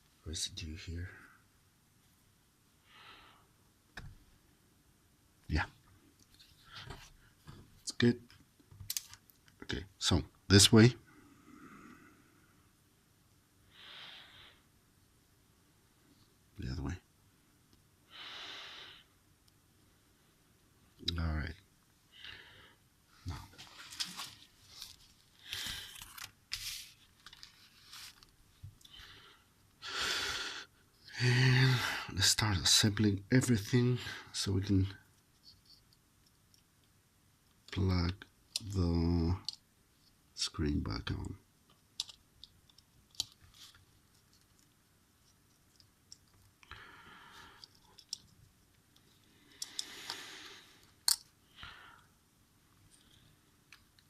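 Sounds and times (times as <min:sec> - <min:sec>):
faint clicks of phone parts: 0:08.6 - 0:09.6, 0:41.2 - 0:46.7, 0:47.5 - 0:51.4
breathy hiss: 0:13.6 - 0:14.7, 0:18.1 - 0:19.2, 0:28.8 - 0:32.3, 0:46.6 - 0:47.8, 0:49.2 - 0:52.2
light rustling of small parts: 0:23.2 - 0:29.0, 0:41.1 - 0:46.7, 0:52.7 - 0:54.0
brief rustling scrapes: 0:25.9 - 0:28.3.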